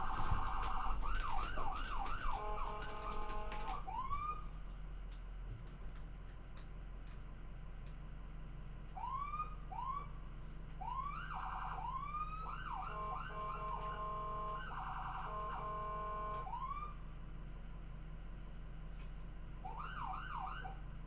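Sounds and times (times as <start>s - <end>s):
ambulance siren: 0.0s - 4.6s, 9.0s - 10.2s, 10.8s - 17.0s, 19.6s - 20.9s
low steady hum: 0.0s - 21.0s.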